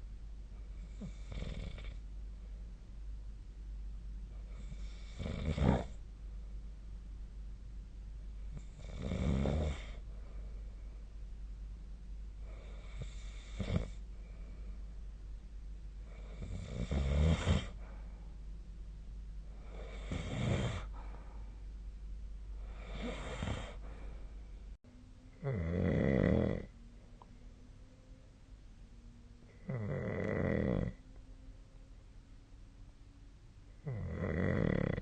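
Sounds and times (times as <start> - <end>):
steady low hum: 0.0 - 35.0
person snoring: 4.6 - 6.0, 8.6 - 10.0, 12.4 - 14.0, 16.1 - 17.8, 19.6 - 20.9, 22.7 - 23.8, 25.4 - 26.7, 29.6 - 31.0, 33.8 - 35.0.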